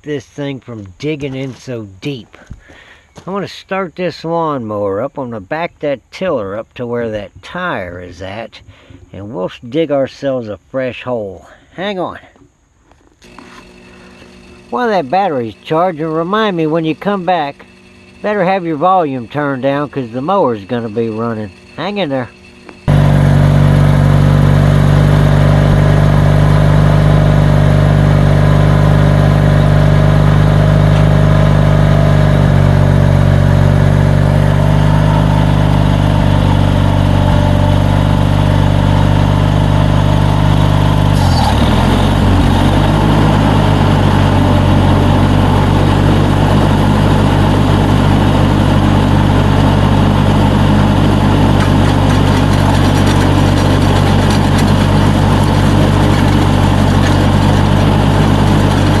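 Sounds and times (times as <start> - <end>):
lawnmower engine running: 12.9 - 59.0.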